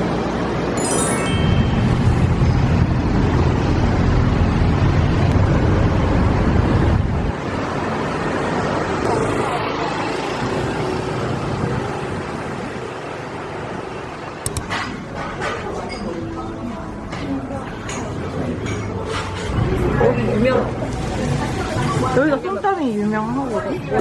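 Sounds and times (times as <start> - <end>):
loud rushing noise with rumble: 0.0 - 15.3.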